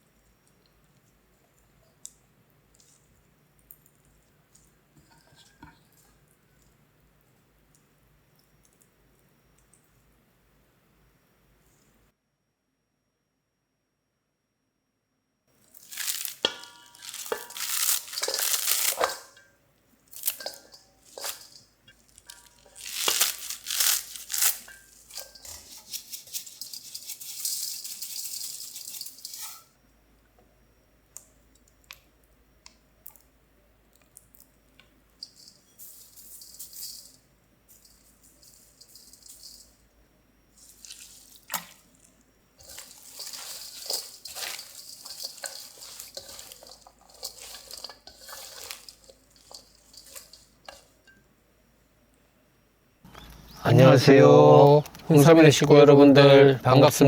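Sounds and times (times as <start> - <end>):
wet handling sounds: 15.6 - 19.5, 20.1 - 29.6, 35.2 - 39.8, 40.5 - 51.2
rustling and crinkling: 15.6 - 29.8, 35.2 - 39.9, 40.5 - 51.2.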